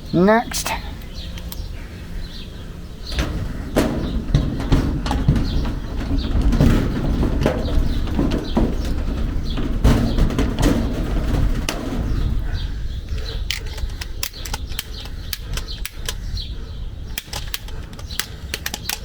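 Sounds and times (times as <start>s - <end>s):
wind rumble on microphone: 0.9s - 19.0s
rivet tool clicks: 1.4s - 1.7s, 13.1s - 16.4s, 17.1s - 19.0s.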